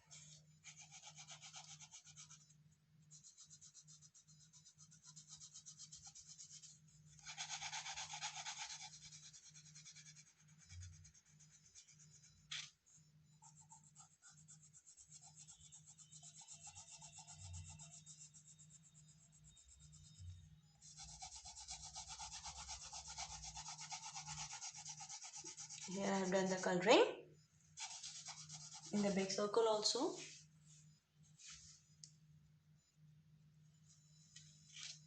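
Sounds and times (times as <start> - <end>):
scribbling on paper: 0.0 - 26.6, 27.8 - 29.2.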